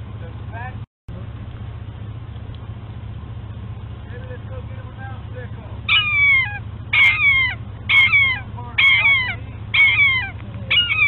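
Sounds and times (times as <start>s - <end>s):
puppy yelping: 5.9s - 11.0s.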